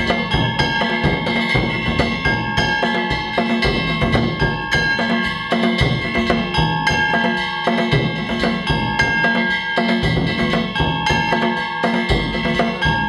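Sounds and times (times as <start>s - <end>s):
metal hand gongs ringing: 0.0s - 13.0s
taiko drums beating: 0.0s - 13.0s.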